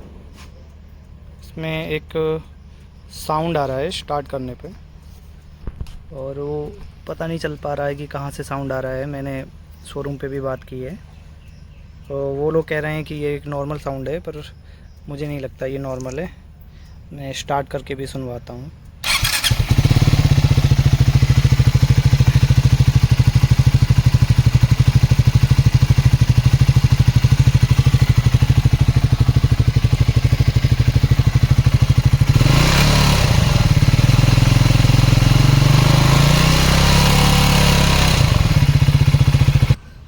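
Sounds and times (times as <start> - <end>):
motorcycle engine idling and revving: 2.6 - 7.1, 18.8 - 39.8.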